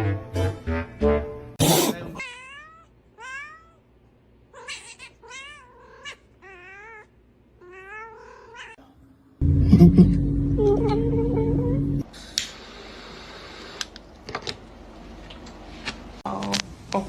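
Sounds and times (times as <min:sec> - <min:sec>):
cat meowing: 0:01.6 - 0:03.8, 0:04.6 - 0:08.8.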